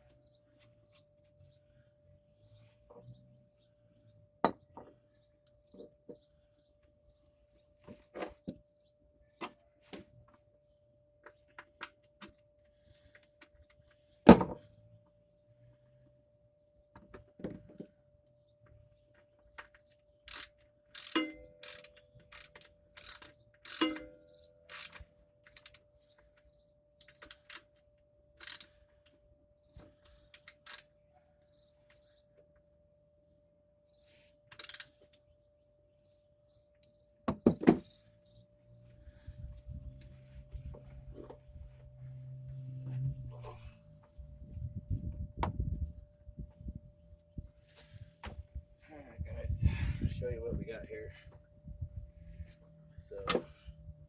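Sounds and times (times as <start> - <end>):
ratchet wrench clicking: 20.3 - 24.1, 24.7 - 25.8, 27.0 - 27.7, 28.4 - 28.7, 30.4 - 30.9, 34.6 - 34.9.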